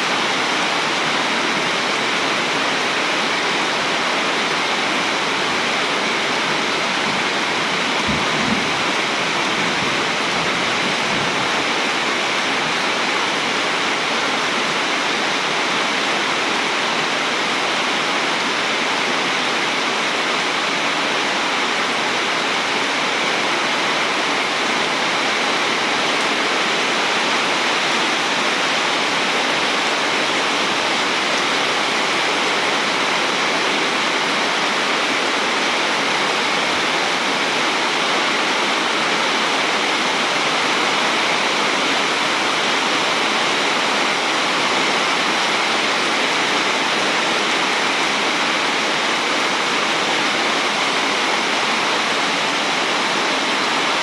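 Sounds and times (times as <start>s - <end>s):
heavy rain pouring: 0.0s - 54.0s.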